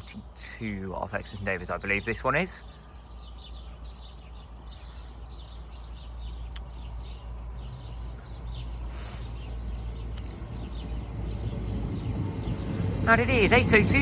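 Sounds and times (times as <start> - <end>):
small birds chirping: 0.0 - 14.0
train rumbling: 6.9 - 14.0.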